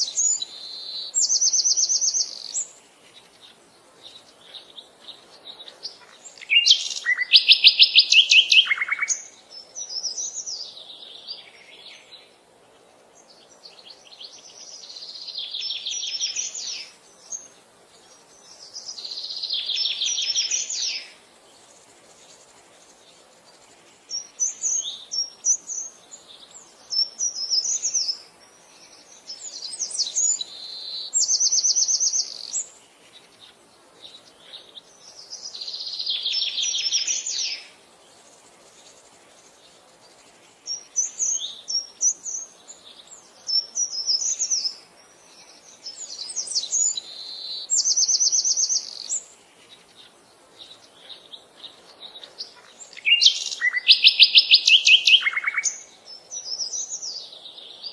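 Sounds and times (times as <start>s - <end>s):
lower rapid bird trill: 0.0s - 57.9s
bird chirping and trilling: 5.9s - 10.4s, 52.1s - 57.2s.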